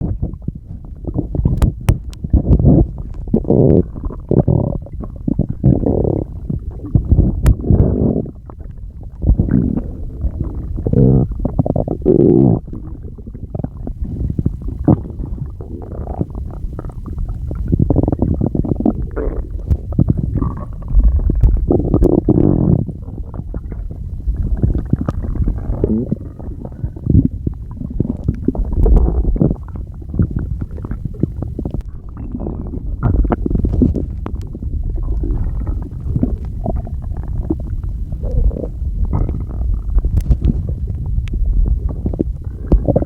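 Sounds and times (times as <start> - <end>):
stomach growling and gurgling: 0.0 - 43.0.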